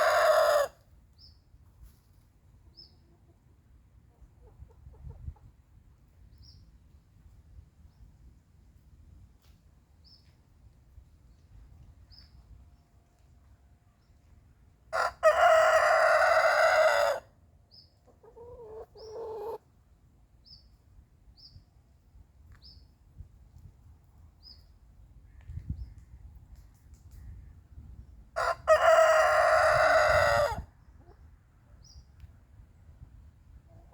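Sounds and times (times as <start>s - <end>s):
rooster crowing: 0.0s - 0.8s, 15.0s - 17.2s, 28.4s - 30.6s.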